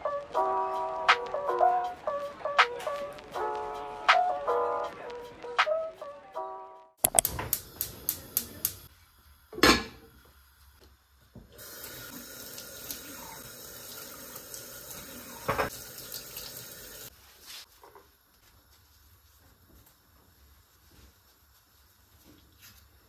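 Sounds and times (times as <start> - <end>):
tap running into sink: 14.9 - 16.7
dish clinking: 15.4 - 15.8.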